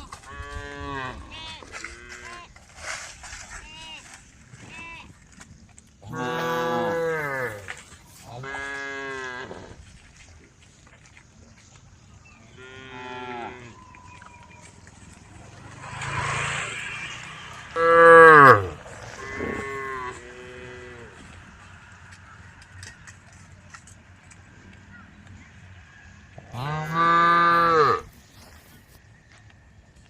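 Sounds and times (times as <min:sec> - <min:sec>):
cattle mooing: 0:06.0 - 0:09.7, 0:15.4 - 0:21.3, 0:26.5 - 0:28.2.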